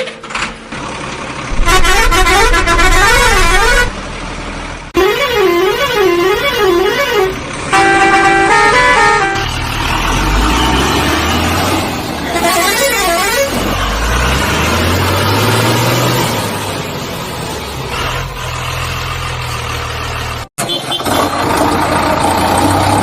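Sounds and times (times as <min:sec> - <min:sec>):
musical horn tune: 0:01.5 - 0:04.0, 0:05.0 - 0:09.6.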